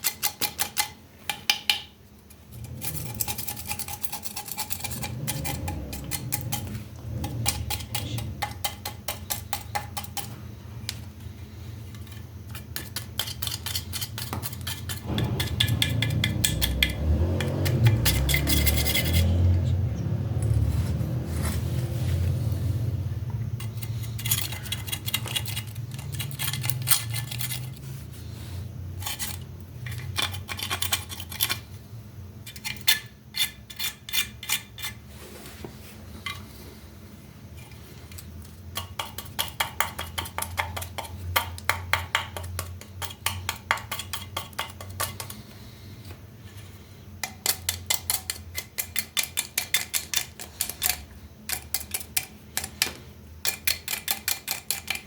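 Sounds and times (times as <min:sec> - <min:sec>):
tool scraping metal mug: 0:02.3 - 0:10.4, 0:11.9 - 0:19.6, 0:23.6 - 0:28.0, 0:29.0 - 0:31.6, 0:37.6 - 0:45.5.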